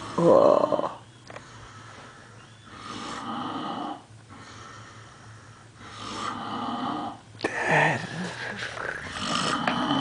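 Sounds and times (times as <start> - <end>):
man snoring: 0.0 - 1.0, 2.8 - 4.9, 5.8 - 10.0
quiet breath: 1.2 - 10.0.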